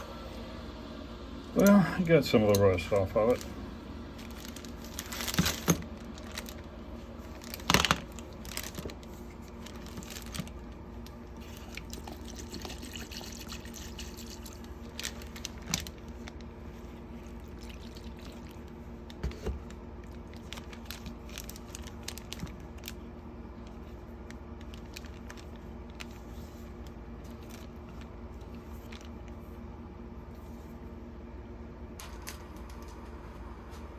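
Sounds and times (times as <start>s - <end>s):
steady low hum: 0.0s - 33.9s
liquid pouring: 11.7s - 15.0s, 17.4s - 18.6s.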